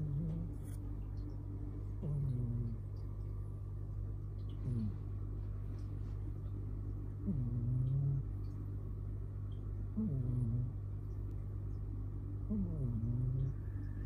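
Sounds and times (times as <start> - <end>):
cat snoring: 0.0 - 0.8, 2.0 - 2.8, 4.6 - 5.0, 7.2 - 8.3, 10.0 - 10.8, 12.5 - 13.6.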